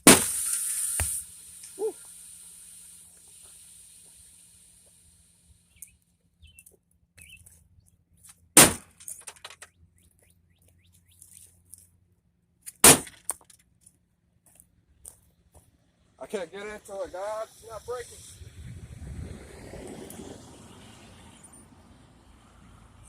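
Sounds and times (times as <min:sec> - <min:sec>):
debris clattering: 0:08.6 - 0:09.7.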